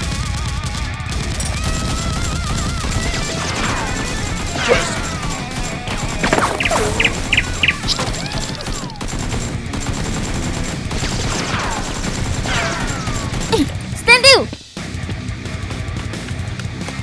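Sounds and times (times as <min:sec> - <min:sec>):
rapid gunfire: 0:02.5 - 0:13.5.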